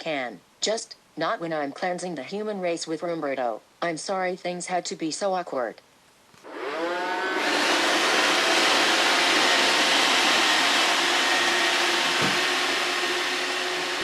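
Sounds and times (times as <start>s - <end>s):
vacuum cleaner motor whine: 6.4s - 14.0s.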